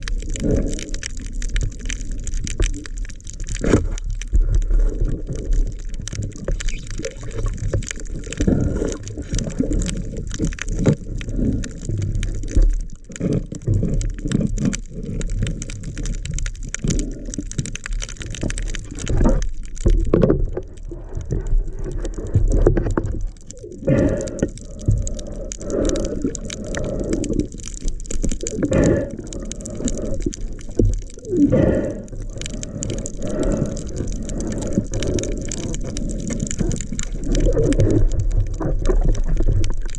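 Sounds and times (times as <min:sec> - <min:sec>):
water sloshing and gurgling underwater: 0:00.0 - 0:39.9.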